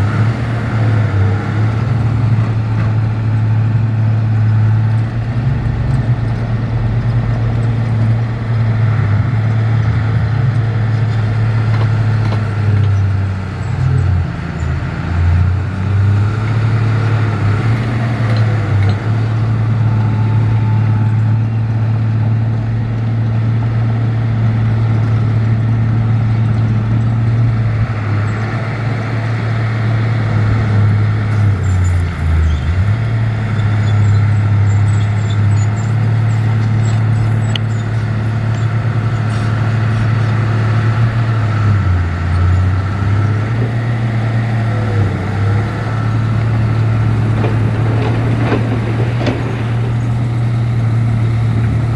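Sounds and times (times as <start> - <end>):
heavy diesel machinery running: 0.0 - 51.9.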